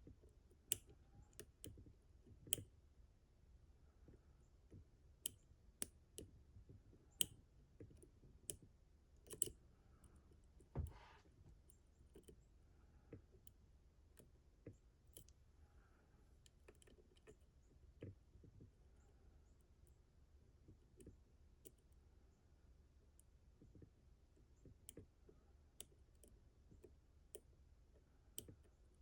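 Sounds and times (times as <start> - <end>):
lock picks clicking: 9.2 - 9.6.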